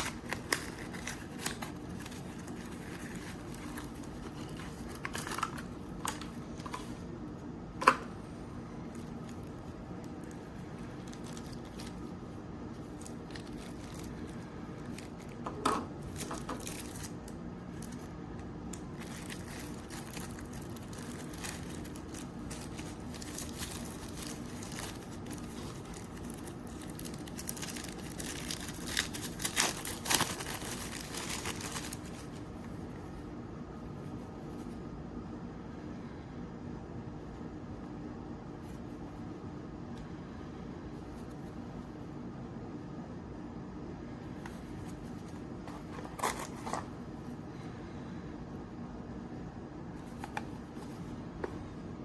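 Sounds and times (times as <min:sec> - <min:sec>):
crinkling and rustling: 0:00.0 - 0:33.2, 0:44.4 - 0:47.2, 0:50.0 - 0:51.7
low room hum: 0:00.0 - 0:52.0.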